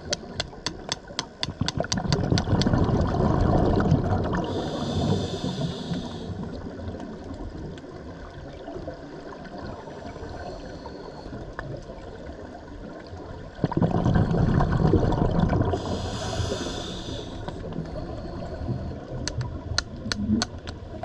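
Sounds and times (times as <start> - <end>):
bubbling water: 0.0 - 10.3, 12.2 - 21.0
burst of exhaled bubbles: 1.7 - 6.9, 13.5 - 17.8
scuba regulator hiss: 4.5 - 6.4, 15.8 - 17.5.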